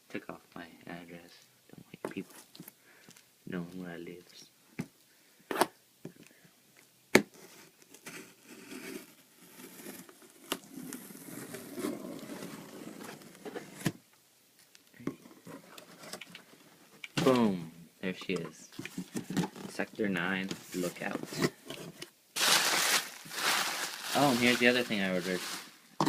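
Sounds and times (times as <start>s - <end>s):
packaging rustling and crinkling: 20.5s - 26.0s.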